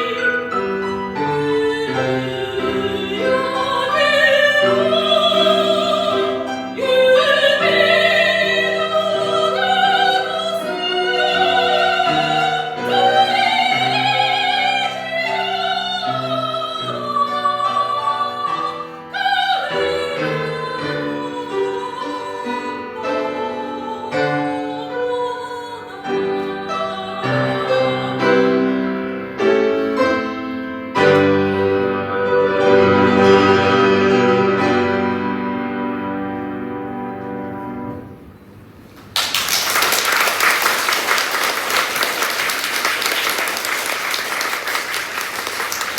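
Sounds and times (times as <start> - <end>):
soprano singing with vibrato: 0.0 - 28.8
piano accompaniment: 0.0 - 39.0.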